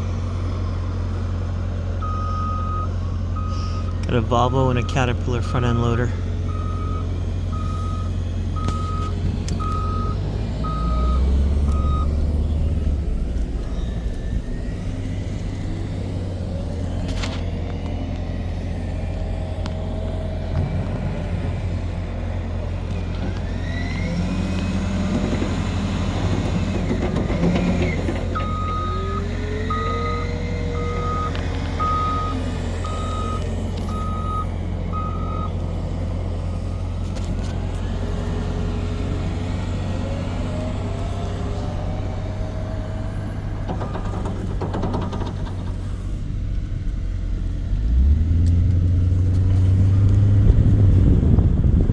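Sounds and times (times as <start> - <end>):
diesel loader engine revving: 0.0 - 51.9
reversing alarm beeping: 2.0 - 5.5, 6.5 - 12.3, 28.3 - 35.6, 43.7 - 44.3.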